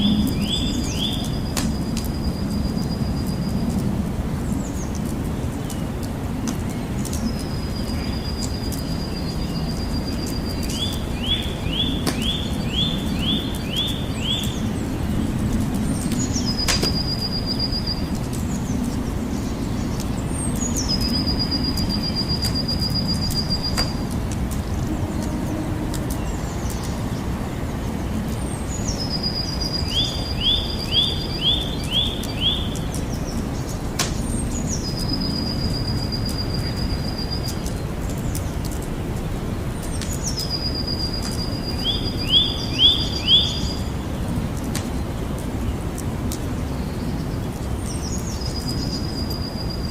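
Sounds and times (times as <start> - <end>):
campfire crackling and popping: 0.0 - 49.4
low rumble: 14.6 - 29.0
songbird whistling: 40.4 - 43.8.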